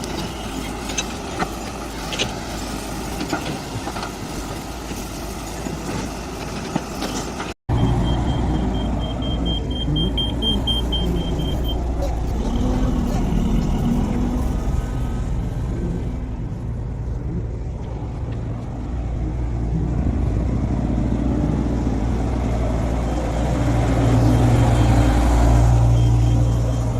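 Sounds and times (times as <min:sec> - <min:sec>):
short high beeps: 0:07.8 - 0:11.9.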